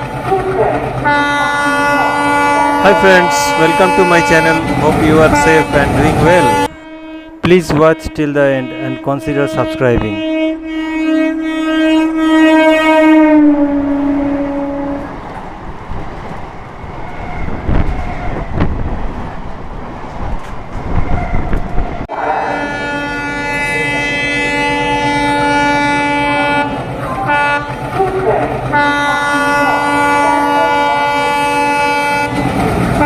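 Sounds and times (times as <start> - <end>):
train horn blast: 1.0 - 15.2, 22.1 - 33.0.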